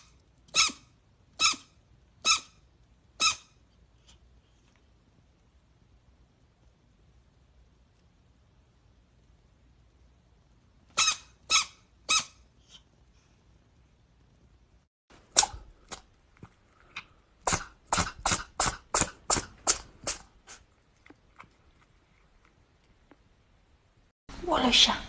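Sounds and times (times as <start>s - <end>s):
small pet sneezing: 17.4s - 20.7s.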